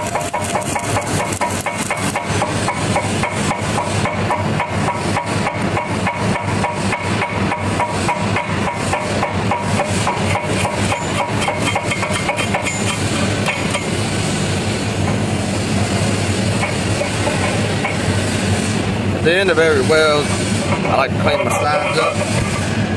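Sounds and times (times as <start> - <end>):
welding crackling ticks: 0.0 - 13.9
smooth welding hiss: 0.0 - 22.8
steady machine hum: 0.0 - 22.9.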